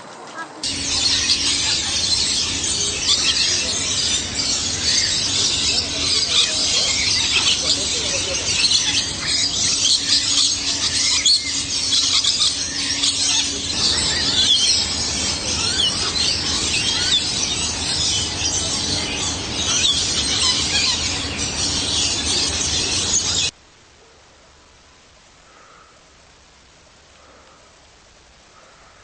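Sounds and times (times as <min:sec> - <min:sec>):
many birds chirping and squealing: 0:00.6 - 0:23.5.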